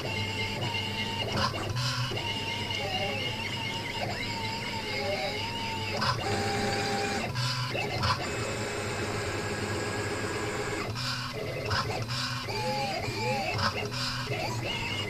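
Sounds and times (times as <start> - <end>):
stepper motors whining: 0.0 - 15.0.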